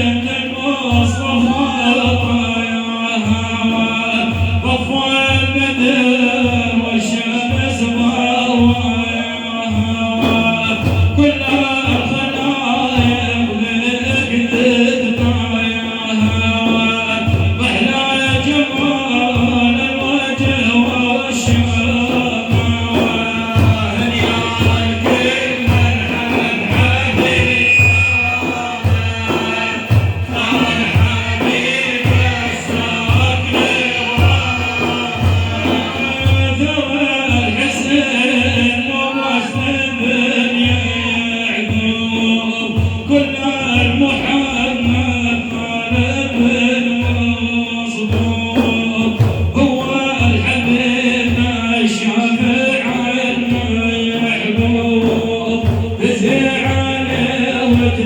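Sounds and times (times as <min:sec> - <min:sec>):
low drum beat: 0:00.0 - 0:58.0
man chanting praise song: 0:00.0 - 0:58.0
group voices: 0:22.0 - 0:37.9.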